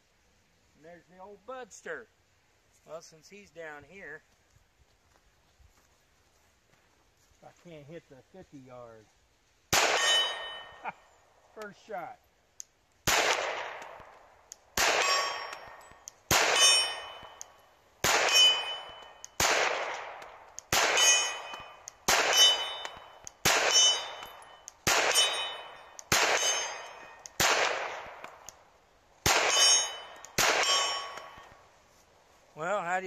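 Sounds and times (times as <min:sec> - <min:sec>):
pistol shots: 0:09.7 - 0:10.8, 0:13.0 - 0:17.4, 0:18.0 - 0:28.5, 0:29.2 - 0:31.6
steel target clanging: 0:09.8 - 0:10.8, 0:14.9 - 0:19.4, 0:20.8 - 0:27.3, 0:29.3 - 0:31.5.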